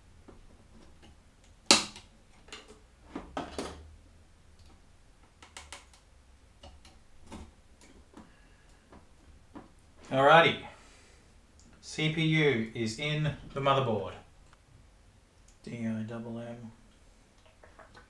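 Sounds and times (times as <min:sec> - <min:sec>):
cpu socket clicks and taps: 0:04.6 - 0:07.0.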